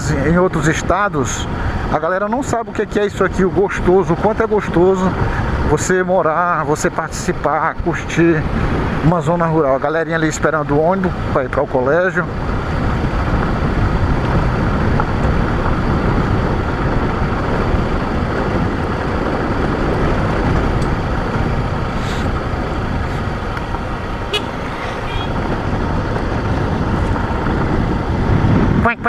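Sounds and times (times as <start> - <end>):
motorcycle riding on dirt road: 12.3 - 28.8.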